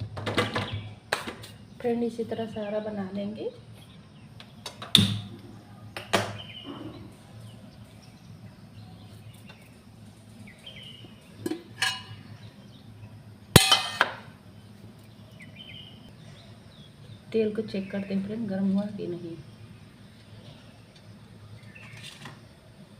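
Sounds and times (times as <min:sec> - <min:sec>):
metal utensils and dishes clanking: 0:11.4 - 0:12.3, 0:13.6 - 0:14.2.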